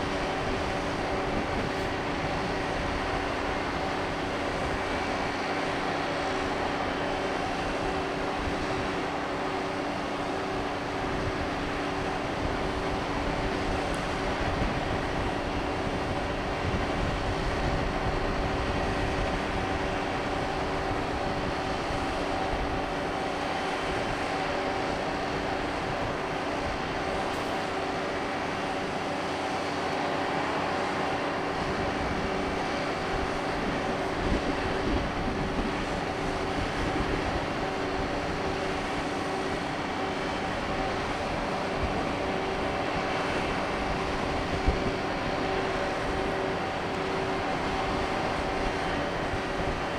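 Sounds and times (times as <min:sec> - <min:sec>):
rush of air and engine noise: 0:00.0 - 0:49.9
ship machinery droning hum: 0:00.0 - 0:49.9.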